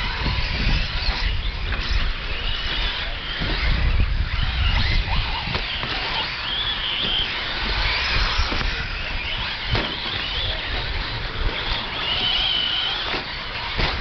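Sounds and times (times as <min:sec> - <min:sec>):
electric motors whining: 0:00.0 - 0:14.0
wind rumble on microphone: 0:00.0 - 0:14.0
knocks from toy trucks: 0:09.7 - 0:11.0, 0:13.0 - 0:14.0.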